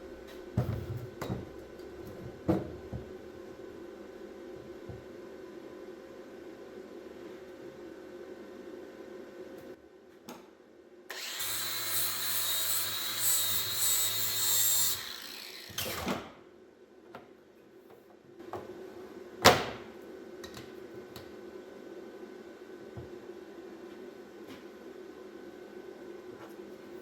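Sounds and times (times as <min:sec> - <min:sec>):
hand power tool running: 0:11.1 - 0:16.1.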